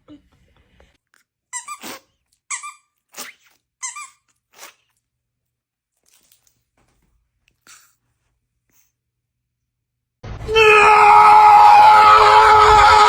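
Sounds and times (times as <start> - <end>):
small dog sneezing: 1.6 - 2.2, 3.1 - 4.9, 7.6 - 8.0.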